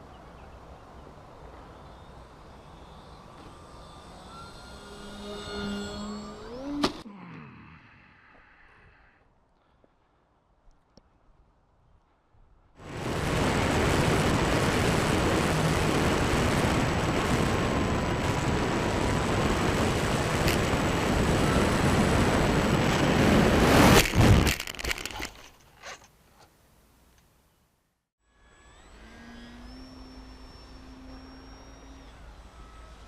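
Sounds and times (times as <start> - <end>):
loud rushing noise: 12.8 - 24.6
crunching clatter: 22.8 - 26.1.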